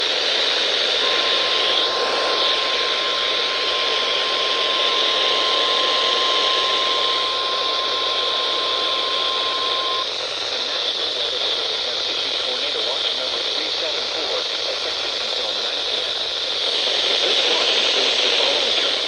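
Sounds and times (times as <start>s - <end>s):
static hiss: 0.0s - 19.0s
steady alert tone: 1.0s - 10.0s.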